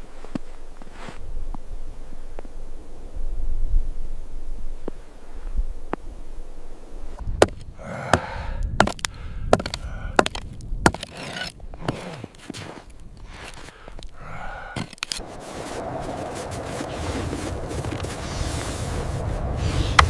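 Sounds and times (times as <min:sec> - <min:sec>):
scraping and rustling: 0:09.6 - 0:14.1, 0:14.8 - 0:20.0.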